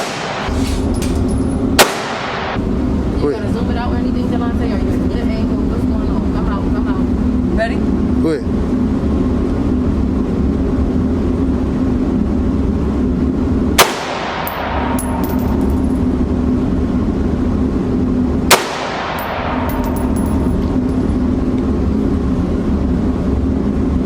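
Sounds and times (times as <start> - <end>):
gunshots with ringing echo: 0.0 - 0.5, 1.8 - 2.6, 13.8 - 15.6, 18.5 - 20.5
steady background hum: 0.0 - 24.0.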